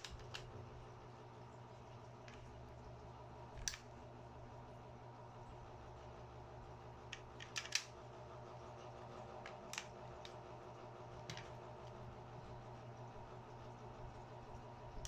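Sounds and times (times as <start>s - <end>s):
steady low hum: 0.0s - 15.0s
faint clicks and taps: 1.5s - 4.0s, 8.8s - 12.6s.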